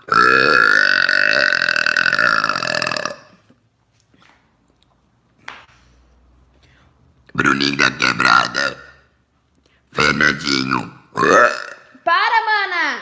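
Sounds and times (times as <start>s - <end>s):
woman burping: 0.0s - 3.6s, 11.2s - 12.0s.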